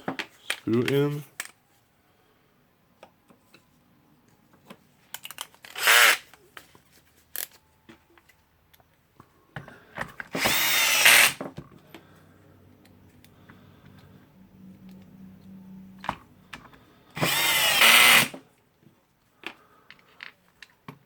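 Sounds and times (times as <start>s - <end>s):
electric drill motor whirring: 5.7s - 6.2s, 10.4s - 11.4s, 17.2s - 18.4s.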